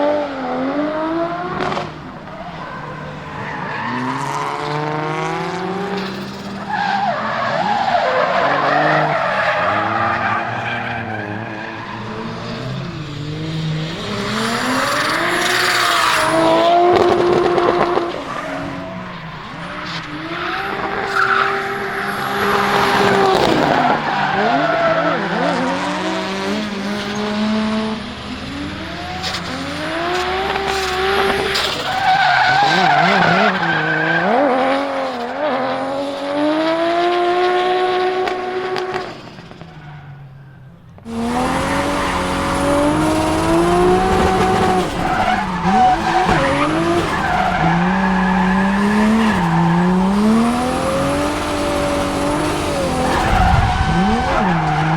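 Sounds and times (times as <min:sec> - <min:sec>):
car engine revving: 0:00.0 - 0:54.9
tyres squealing: 0:06.0 - 0:35.3, 0:41.1 - 0:54.9.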